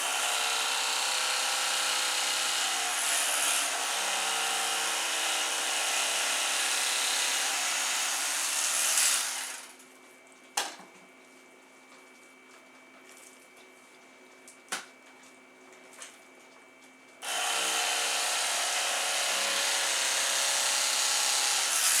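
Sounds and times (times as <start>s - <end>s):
electric carving knife running: 0.0s - 9.7s, 17.2s - 22.0s.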